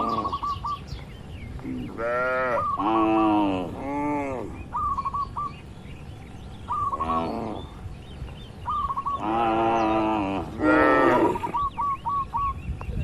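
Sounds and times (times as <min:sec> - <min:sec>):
bird calling high notes: 0:00.0 - 0:12.7
cattle mooing: 0:01.9 - 0:04.6, 0:09.2 - 0:11.6.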